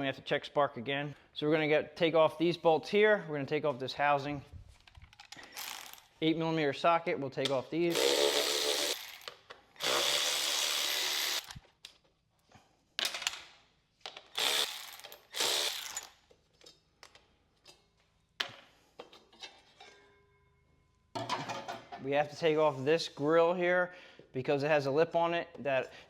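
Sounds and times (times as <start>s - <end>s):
clicks and knocks of parts handled: 4.7s - 6.1s, 11.5s - 14.4s, 15.0s - 19.8s
ratchet wrench ratcheting: 5.4s - 6.2s, 7.9s - 11.6s, 14.2s - 16.3s.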